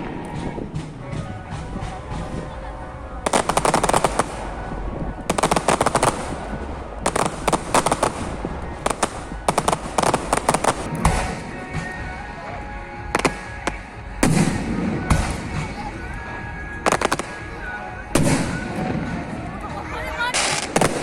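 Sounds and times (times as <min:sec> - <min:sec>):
fireworks crackling pops: 0:03.2 - 0:12.1, 0:13.0 - 0:19.4, 0:20.3 - 0:21.0.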